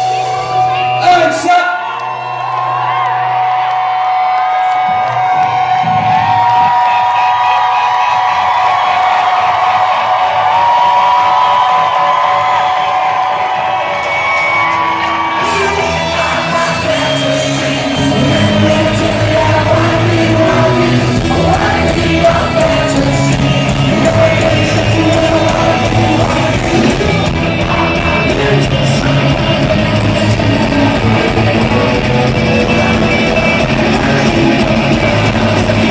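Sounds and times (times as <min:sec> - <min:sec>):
live rock band playing: 0:00.0 - 0:35.9
person singing: 0:15.4 - 0:35.9.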